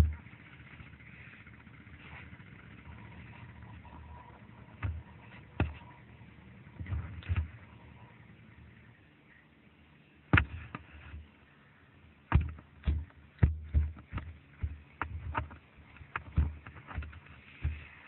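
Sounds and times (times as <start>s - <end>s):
thumps and knocks: 0.0s - 0.2s, 4.8s - 5.9s, 6.8s - 7.6s, 10.3s - 11.2s, 12.3s - 18.0s.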